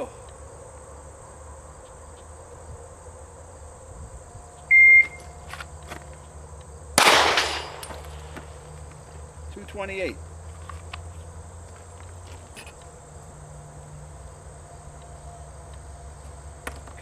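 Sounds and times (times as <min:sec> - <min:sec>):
insects trilling: 0:00.0 - 0:17.0
pistol shot with echo: 0:07.0 - 0:08.8.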